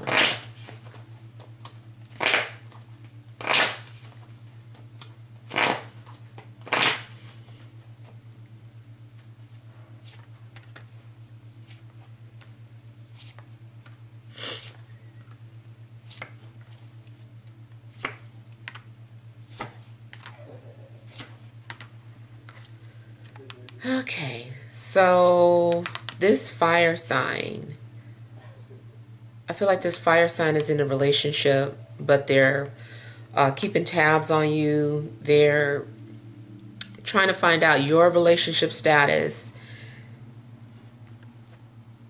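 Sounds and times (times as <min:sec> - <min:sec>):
steady low hum: 0:00.0 - 0:42.0
cards shuffling and riffling: 0:05.5 - 0:07.4, 0:09.1 - 0:10.9, 0:13.1 - 0:14.0, 0:16.0 - 0:20.4, 0:21.0 - 0:23.7.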